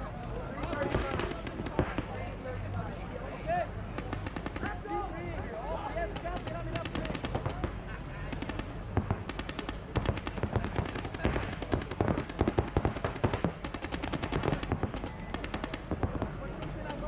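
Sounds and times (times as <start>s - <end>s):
paintball markers firing: 0.6s - 2.2s, 3.9s - 4.9s, 6.1s - 17.0s.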